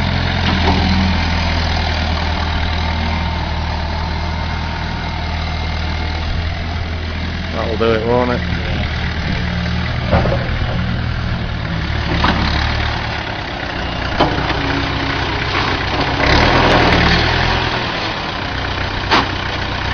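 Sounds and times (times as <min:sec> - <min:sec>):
tractor engine idling: 0:00.0 - 0:19.9.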